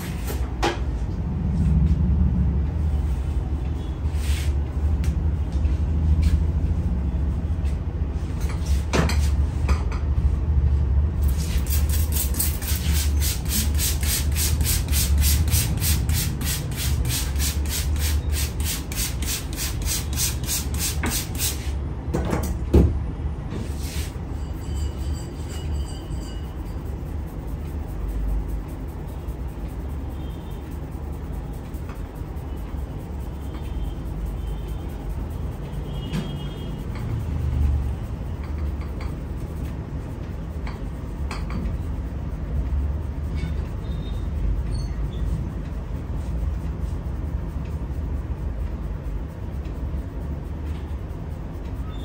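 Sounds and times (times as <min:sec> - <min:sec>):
hands rubbing hair and skin: 0:04.2 - 0:06.6, 0:11.2 - 0:21.7, 0:23.6 - 0:24.2.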